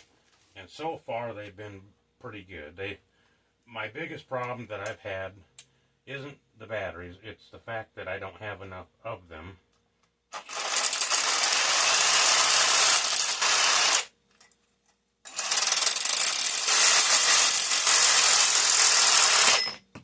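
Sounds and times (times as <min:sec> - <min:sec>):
power tool running: 0:10.3 - 0:14.1, 0:15.3 - 0:19.8.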